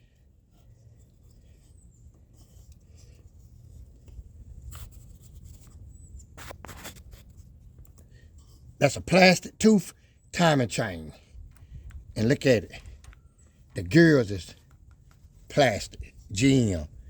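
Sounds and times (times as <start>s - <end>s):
steady low rumble: 11.1s - 13.8s.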